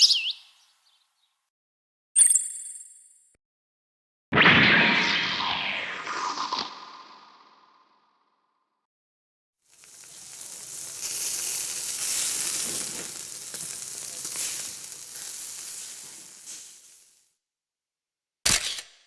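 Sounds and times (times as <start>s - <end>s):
crackling hiss with pops: 9.7s - 17.2s.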